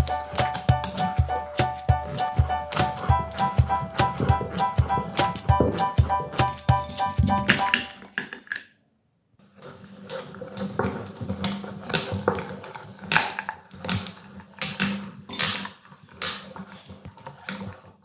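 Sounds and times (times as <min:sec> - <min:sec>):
short high squeaks: 0:02.8 - 0:07.3.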